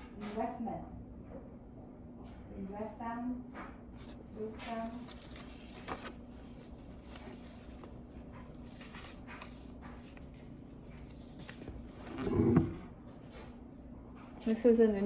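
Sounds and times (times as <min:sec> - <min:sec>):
faint rustling and handling: 0:03.9 - 0:13.4.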